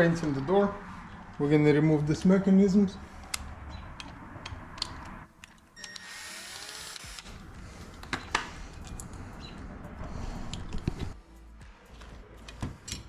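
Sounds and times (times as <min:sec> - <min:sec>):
cordless drill running: 0:05.9 - 0:07.4.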